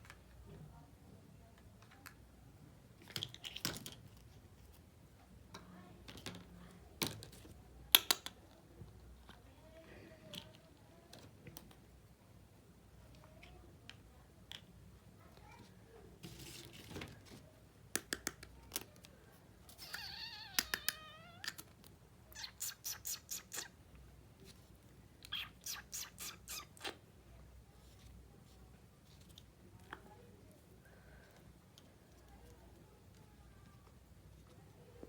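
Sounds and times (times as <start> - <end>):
toy pieces clicking and tapping: 17.9 - 19.1, 19.8 - 21.8.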